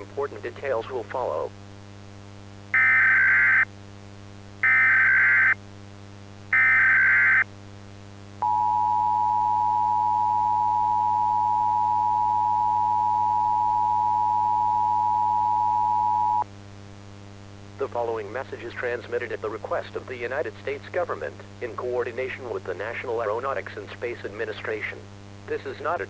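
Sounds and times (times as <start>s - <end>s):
two-tone alarm: 2.8s - 3.6s, 4.6s - 5.6s, 6.6s - 7.4s
buzzing data tones: 2.8s - 3.7s, 4.6s - 5.6s, 6.6s - 7.4s.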